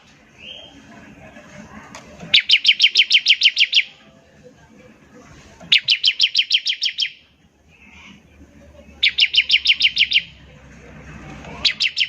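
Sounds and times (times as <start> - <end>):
bird rapid repeated sharp notes: 2.3 - 3.9, 5.7 - 7.2, 9.0 - 10.3, 11.6 - 12.0.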